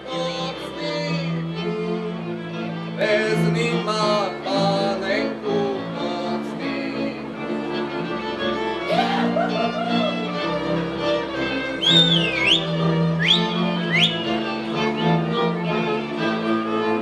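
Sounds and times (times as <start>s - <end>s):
bowed bass: 0.0s - 17.0s
fiddles playing: 0.0s - 17.0s
people singing: 3.0s - 7.6s.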